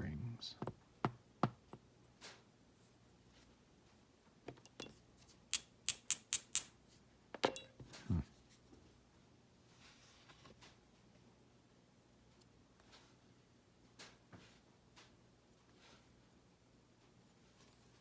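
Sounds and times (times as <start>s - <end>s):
lock parts clinking: 4.7s - 6.7s, 7.4s - 7.8s
sharp metallic ticks: 5.6s - 6.7s.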